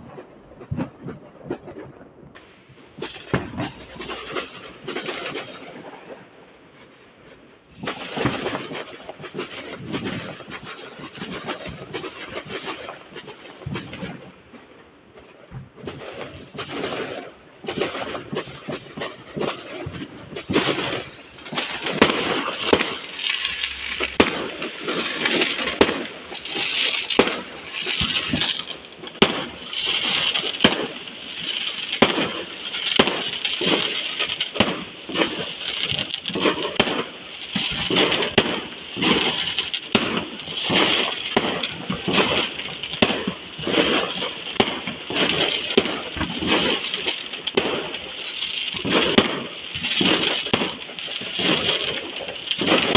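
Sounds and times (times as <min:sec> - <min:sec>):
fireworks cracking and banging: 0:00.0 - 0:52.9.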